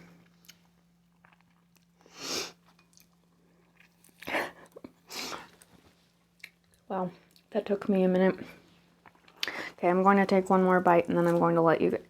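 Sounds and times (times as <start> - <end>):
faint steady hum: 0.0 - 12.0
chewing with mouth clicks: 0.2 - 7.5, 9.0 - 9.6.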